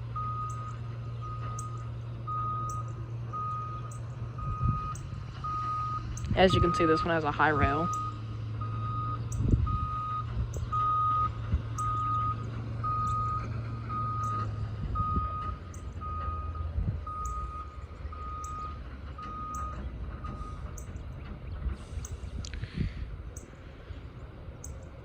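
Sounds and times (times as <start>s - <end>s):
vehicle reverse alarm beeping: 0.0s - 21.3s
vehicle engine running: 0.0s - 25.0s.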